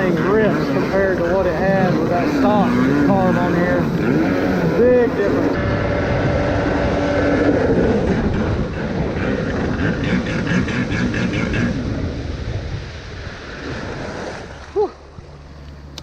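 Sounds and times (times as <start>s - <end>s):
two-stroke engine revving: 0.0s - 12.1s.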